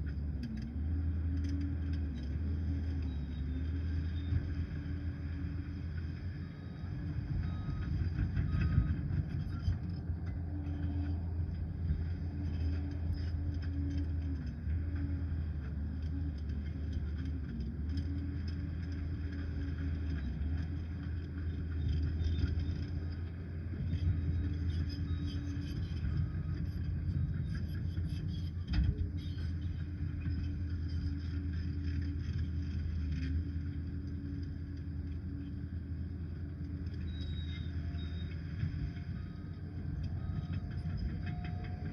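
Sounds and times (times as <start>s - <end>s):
light clicks and clanks: 0.0s - 3.2s, 7.0s - 41.9s
diesel engine droning under load: 0.0s - 41.9s.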